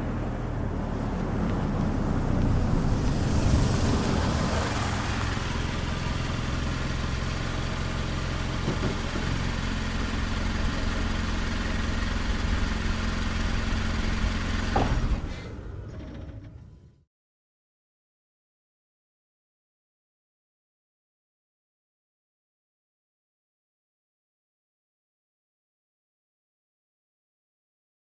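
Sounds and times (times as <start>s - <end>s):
car engine idling: 0.0s - 15.9s
car driving in and stopping: 0.0s - 17.1s.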